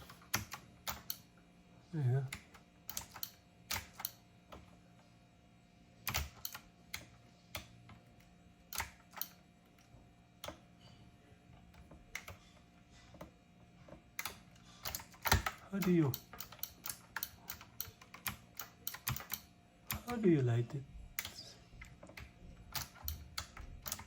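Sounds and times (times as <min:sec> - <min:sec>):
keyboard keys clicking: 0:00.0 - 0:01.3, 0:02.3 - 0:04.7, 0:06.1 - 0:08.0, 0:11.8 - 0:12.4, 0:13.9 - 0:20.2, 0:21.1 - 0:24.0.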